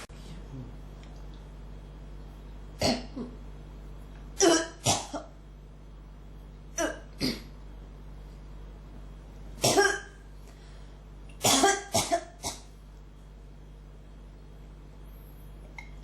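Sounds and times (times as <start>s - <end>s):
person coughing: 2.8s - 3.4s, 4.4s - 5.4s, 6.8s - 7.6s, 9.6s - 10.2s, 11.4s - 12.7s.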